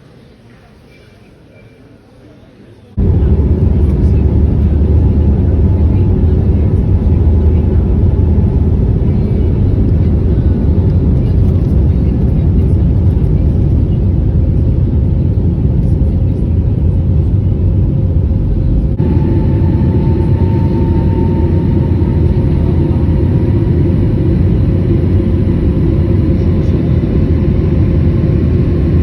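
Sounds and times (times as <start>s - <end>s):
steady hum: 3.0s - 29.0s
vehicle rumble: 3.0s - 29.0s.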